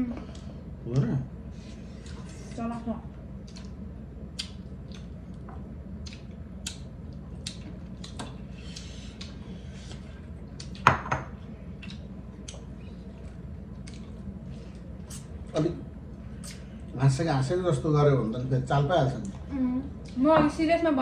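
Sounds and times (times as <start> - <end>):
wet chewing: 3.4 - 3.8, 4.4 - 5.4, 6.0 - 10.8, 11.8 - 15.5.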